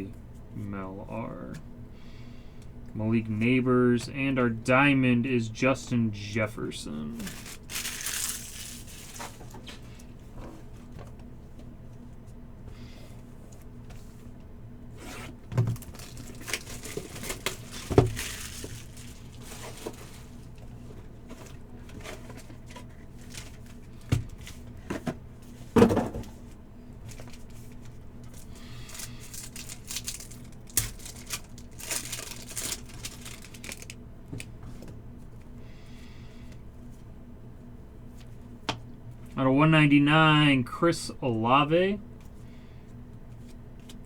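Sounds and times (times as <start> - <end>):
card wrappers crinkling and tearing: 7.1 - 10.0, 15.7 - 20.9, 23.1 - 24.7, 27.1 - 34.0.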